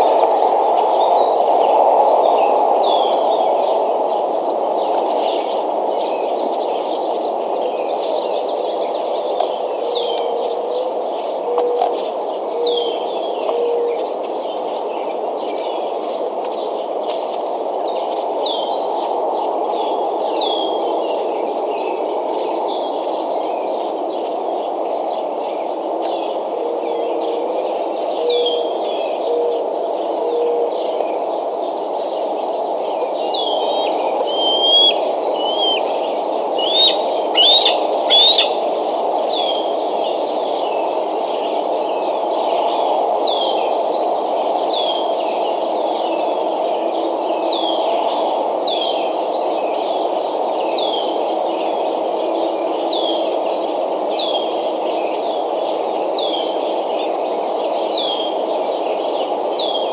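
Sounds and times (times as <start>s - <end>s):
birds chirping: 27.7s - 42.2s.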